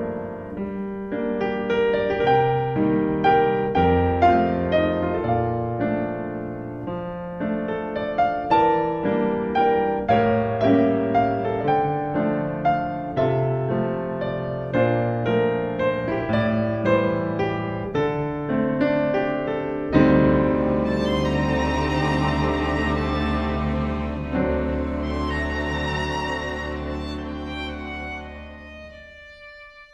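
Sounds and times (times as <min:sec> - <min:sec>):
slow piano melody: 0:00.0 - 0:29.9
sustained string sound: 0:20.7 - 0:29.9.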